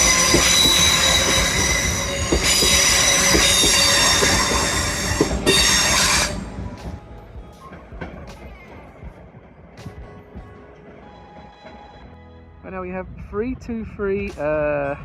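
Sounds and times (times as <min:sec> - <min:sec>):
train wheels squealing: 0:00.0 - 0:09.9, 0:10.8 - 0:12.5
train running rumble: 0:00.0 - 0:13.9.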